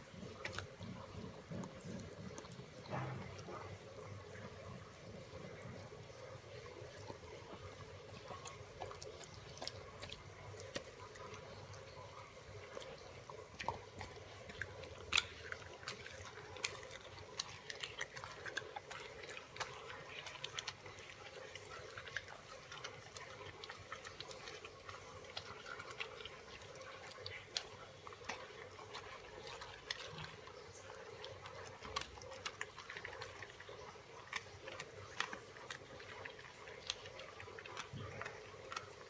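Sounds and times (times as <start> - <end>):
dog chewing food: 0.0 - 39.0.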